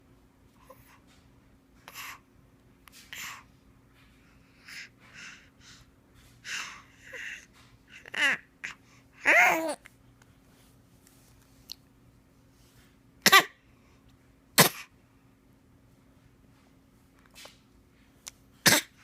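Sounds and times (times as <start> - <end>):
baby fake coughing: 13.2 - 13.6, 14.6 - 14.9, 18.6 - 19.0.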